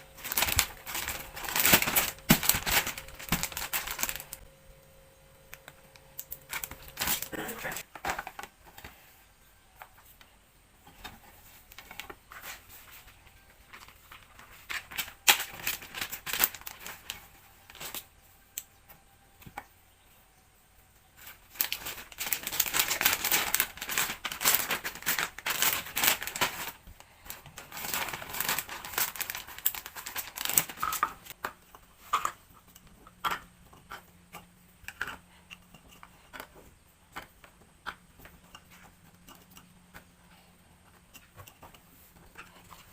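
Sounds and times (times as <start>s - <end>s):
plastic packaging crinkling: 0.0s - 4.5s, 5.5s - 9.0s, 11.6s - 18.1s, 21.2s - 31.4s.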